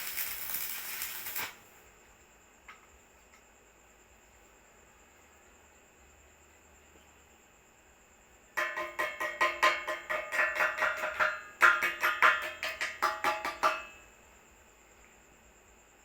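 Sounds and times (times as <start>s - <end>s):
rapid ringing knocks: 8.6s - 14.1s.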